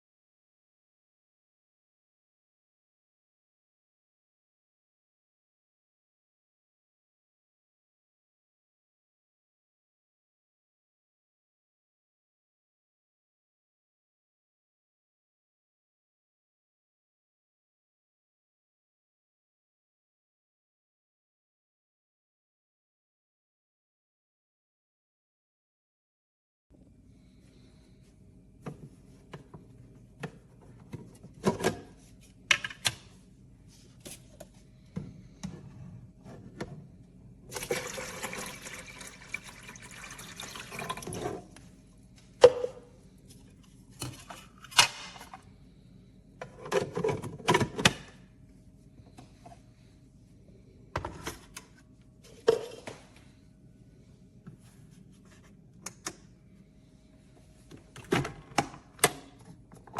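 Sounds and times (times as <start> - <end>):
water pouring: 37.5 - 41.5.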